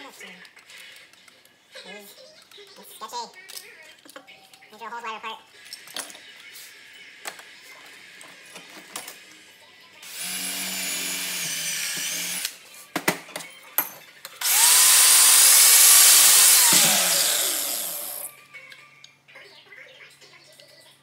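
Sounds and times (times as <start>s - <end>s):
electric drill boring through steel: 10.0s - 12.6s, 14.4s - 18.3s.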